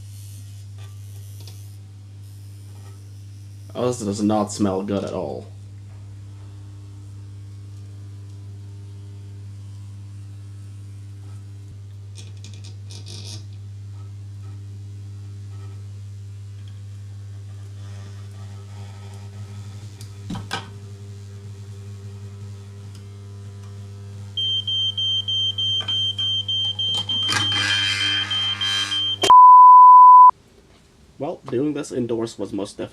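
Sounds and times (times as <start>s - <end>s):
smoke alarm beeping rapidly: 24.4s - 27.3s.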